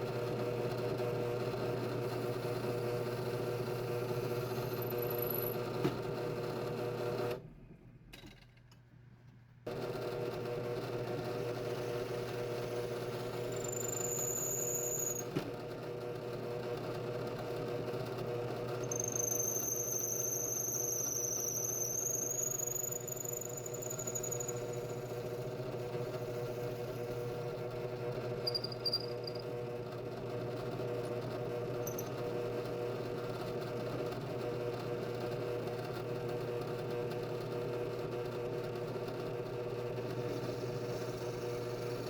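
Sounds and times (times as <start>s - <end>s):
high-pitched wavering squeal: 13.5s - 15.2s, 18.8s - 25.0s.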